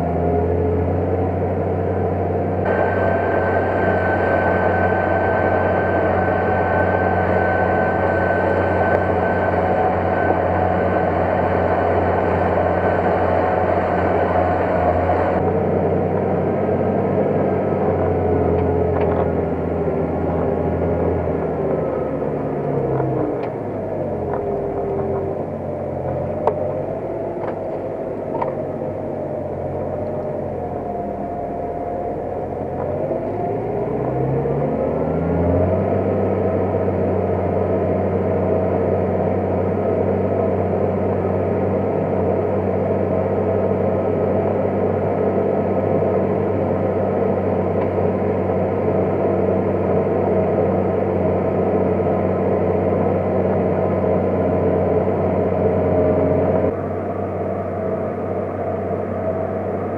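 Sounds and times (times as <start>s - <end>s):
tractor engine running under load: 0.0s - 59.9s
thin high whine: 2.6s - 34.3s.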